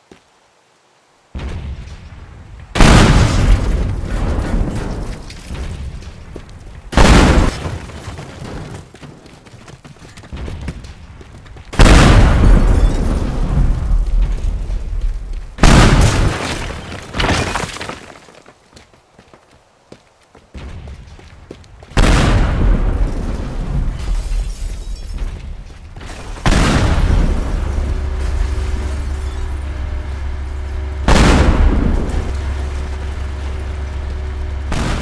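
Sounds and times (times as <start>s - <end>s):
booming crashes with rumbling tail: 1.4s - 6.2s, 11.8s - 16.4s, 22.0s - 35.0s.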